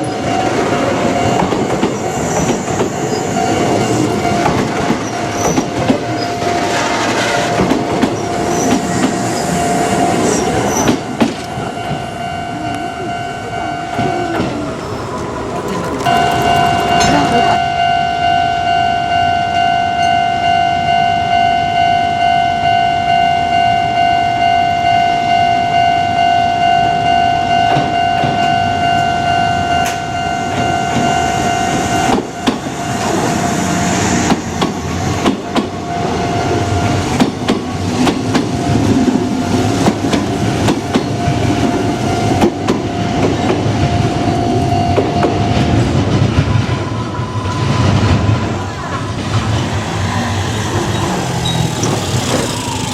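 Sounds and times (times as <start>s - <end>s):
level crossing warning bell: 0.0s - 34.1s
train wheels clacking: 0.3s - 12.1s, 13.9s - 17.6s, 29.8s - 36.2s, 36.8s - 44.2s, 44.9s - 52.9s.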